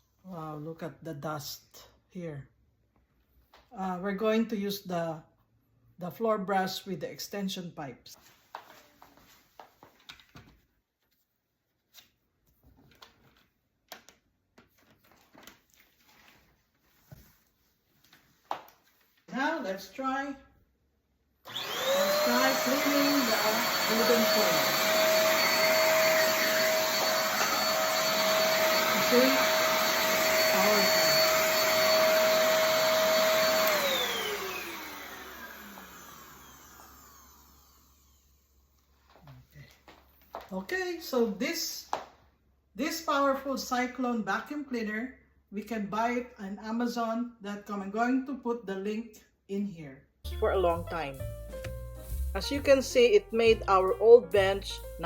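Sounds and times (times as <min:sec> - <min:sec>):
vacuum cleaner motor whine: 0:21.5 - 0:38.6.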